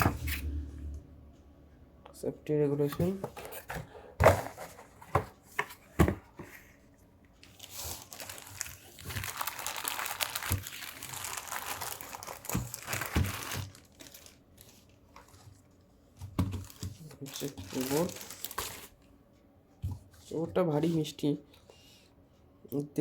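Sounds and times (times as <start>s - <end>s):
packaging crinkling: 7.4s - 15.6s, 16.4s - 19.0s.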